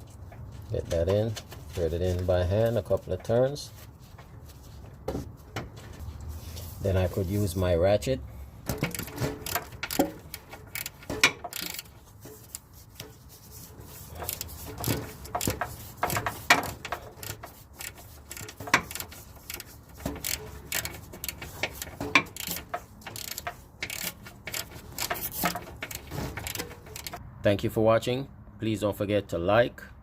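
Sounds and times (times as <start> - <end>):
hand ratchet clicking: 8.7 - 13.1, 13.9 - 27.2.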